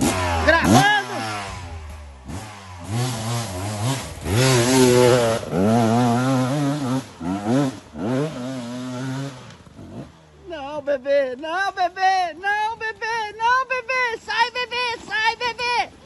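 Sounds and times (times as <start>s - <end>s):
motorcycle engine revving: 0.0s - 10.6s.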